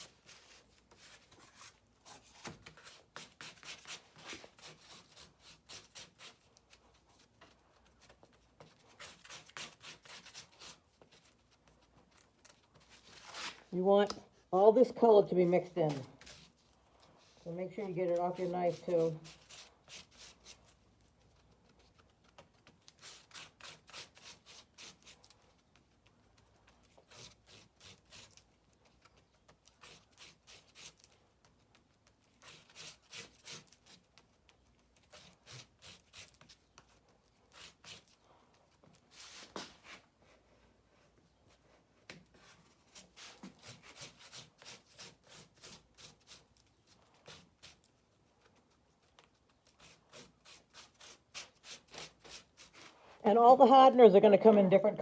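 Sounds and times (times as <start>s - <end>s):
palette knife scraping filler: 8.6s - 11.4s, 17.4s - 20.8s, 22.8s - 25.2s, 26.9s - 28.5s, 32.2s - 38.2s, 42.4s - 47.9s, 49.5s - 53.0s.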